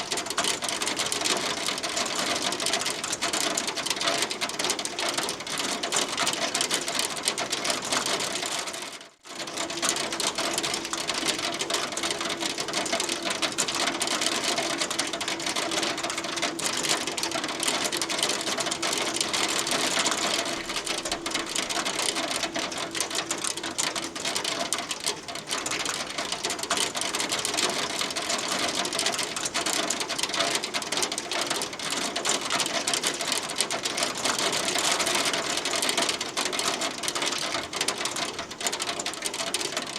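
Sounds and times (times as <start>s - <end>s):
hail pelting a hard surface: 0.0s - 39.9s.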